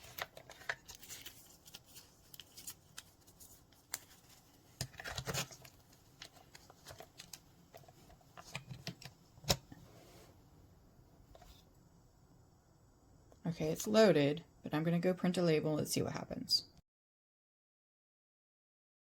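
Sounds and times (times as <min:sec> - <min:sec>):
plastic clicks and rustles: 0:00.0 - 0:09.8.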